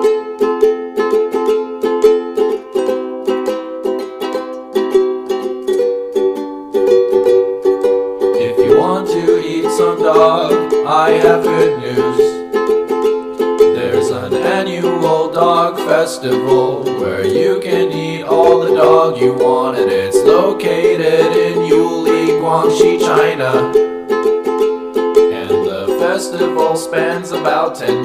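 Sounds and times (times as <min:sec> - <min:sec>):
ukulele strumming chords: 0:00.0 - 0:28.0
person singing or humming: 0:08.4 - 0:12.5, 0:13.7 - 0:23.8, 0:25.3 - 0:28.0.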